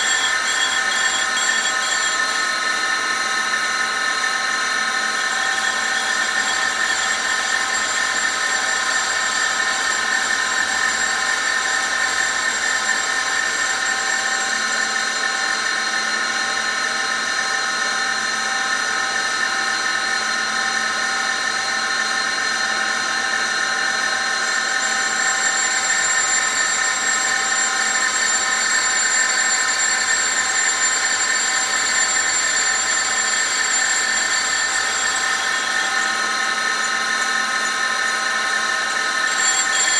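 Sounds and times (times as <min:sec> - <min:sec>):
grinding wheel whining on metal: 0:00.0 - 0:16.8, 0:24.2 - 0:39.9.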